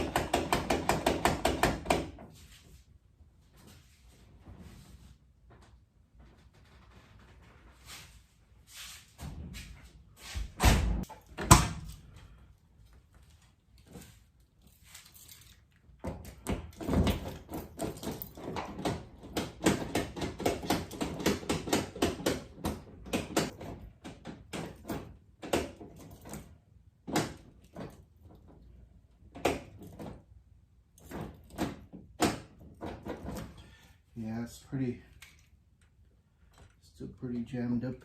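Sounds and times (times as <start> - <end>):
door lock clicking and clunking: 16.0 - 33.6.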